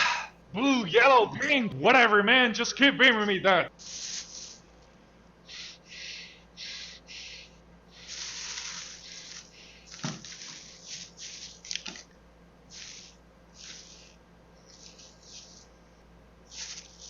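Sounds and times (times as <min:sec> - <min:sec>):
heavy breathing: 0:05.4 - 0:11.6.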